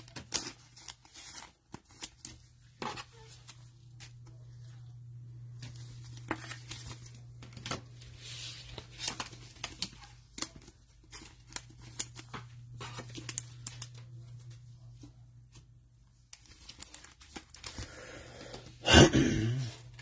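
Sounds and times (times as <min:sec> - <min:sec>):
cellophane wrappers crinkling and tearing: 0:00.0 - 0:04.5, 0:05.6 - 0:14.7, 0:16.1 - 0:18.5
low steady hum: 0:00.0 - 0:20.0.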